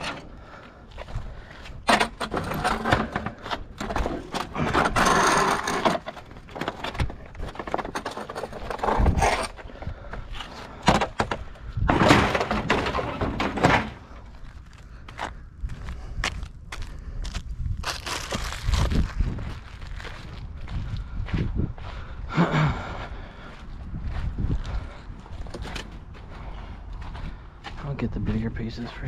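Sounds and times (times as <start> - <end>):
debris clattering in a dumpster: 10.8 - 14.4.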